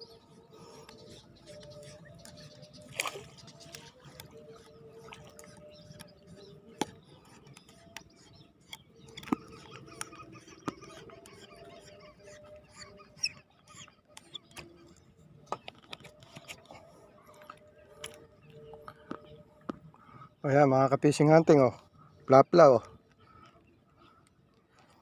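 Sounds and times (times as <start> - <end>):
underwater clicks and crackles: 2.0 - 11.6, 13.7 - 19.9.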